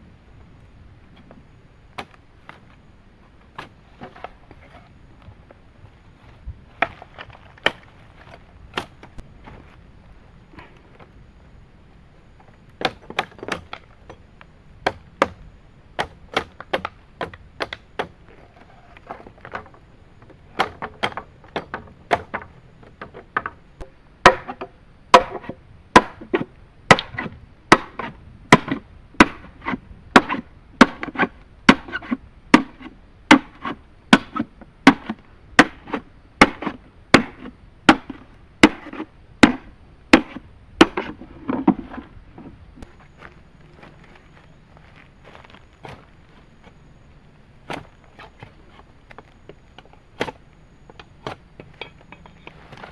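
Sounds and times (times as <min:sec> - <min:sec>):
blade chopping wood: 0:16.0 - 0:18.2, 0:20.6 - 0:23.5, 0:24.2 - 0:42.0, 0:50.2 - 0:51.4.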